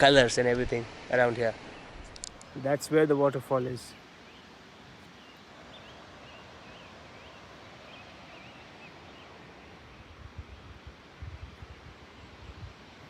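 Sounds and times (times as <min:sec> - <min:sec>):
distant waterfall rushing: 0:00.0 - 0:13.0
bird chirping: 0:03.6 - 0:09.8
wind buffeting microphone: 0:10.0 - 0:13.0.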